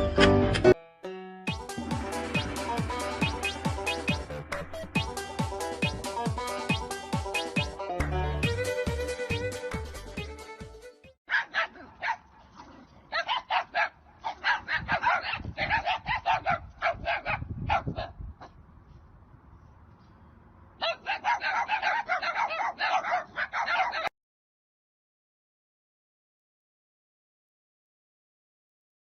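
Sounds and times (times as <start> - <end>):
dog barking: 11.3 - 18.6, 20.8 - 24.1.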